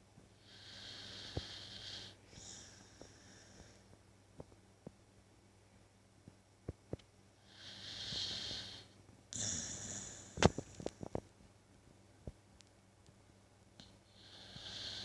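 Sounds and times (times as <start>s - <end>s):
person snoring: 0.4s - 3.8s, 7.5s - 10.7s, 14.2s - 15.0s.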